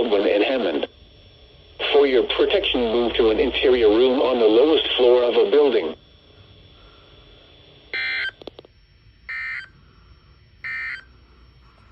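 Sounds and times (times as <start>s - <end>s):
faint radio hiss: 0.0s - 7.5s
buzzy digital data tones: 0.0s - 11.9s.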